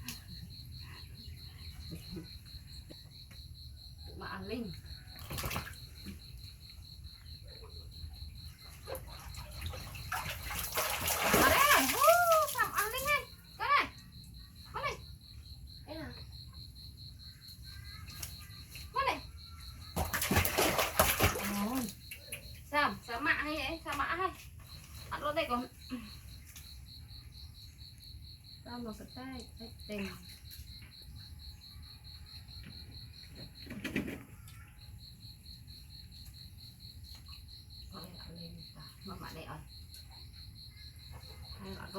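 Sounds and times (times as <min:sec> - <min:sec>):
insect chirping: 0:00.0 - 0:41.9
water splash: 0:09.3 - 0:13.1, 0:20.0 - 0:21.9.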